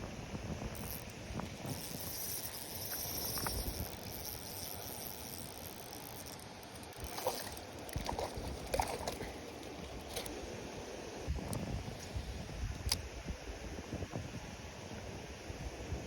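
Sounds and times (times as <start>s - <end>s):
water trickling and lapping: 0.7s - 12.3s.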